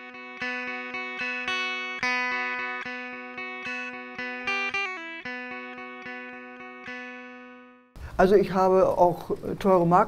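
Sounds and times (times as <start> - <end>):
guitar picking single notes: 0.0 - 8.0.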